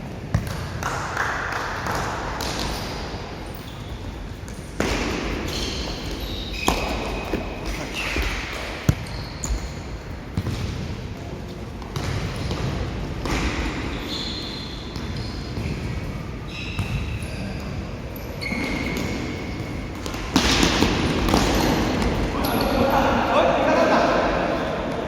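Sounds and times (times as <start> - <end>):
shoes squeaking on court floor: 5.3 - 10.6, 13.8 - 20.2, 21.3 - 23.0.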